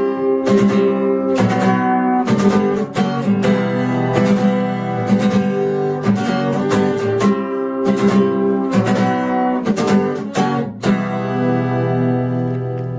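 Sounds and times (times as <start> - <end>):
acoustic guitar strumming chords: 0.0 - 12.9.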